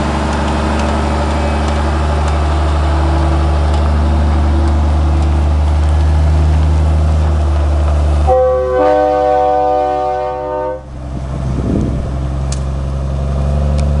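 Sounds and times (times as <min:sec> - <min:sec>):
truck diesel engine under load: 0:00.0 - 0:14.0
truck air horn chord: 0:08.2 - 0:11.0.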